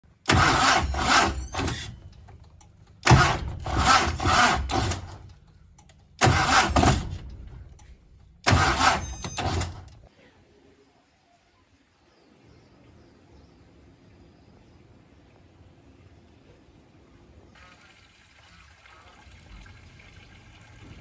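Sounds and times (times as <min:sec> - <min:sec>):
car engine revving: 0:00.3 - 0:02.1, 0:03.0 - 0:05.4, 0:06.2 - 0:10.0.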